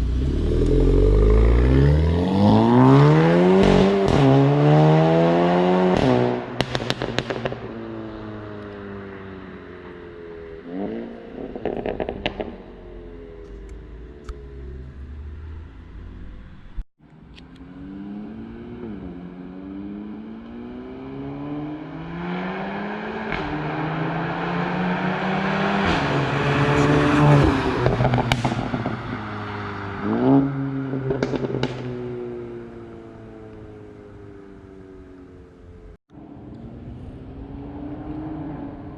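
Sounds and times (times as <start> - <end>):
car engine accelerating through upshifts: 0.0 - 9.8, 17.4 - 34.6, 36.4 - 38.9.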